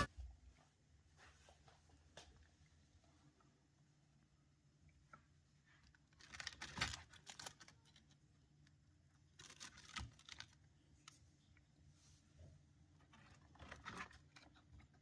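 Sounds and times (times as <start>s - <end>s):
faint clicking and crackling: 4.9s - 11.7s.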